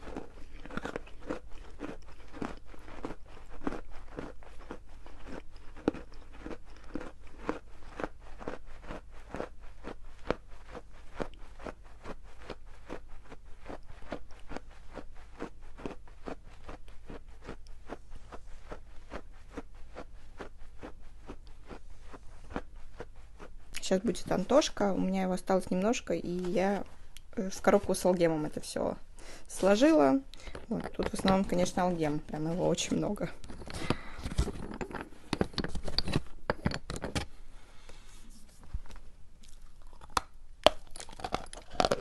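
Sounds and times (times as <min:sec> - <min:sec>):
crisp crunching of chewing: 0:00.0 - 0:23.9, 0:38.8 - 0:42.0.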